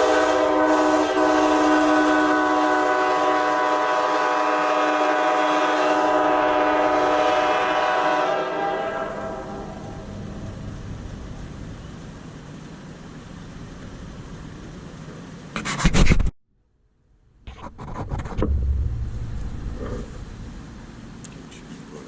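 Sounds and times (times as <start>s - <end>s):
vehicle engine rumble: 9.0s - 15.6s, 16.9s - 22.0s.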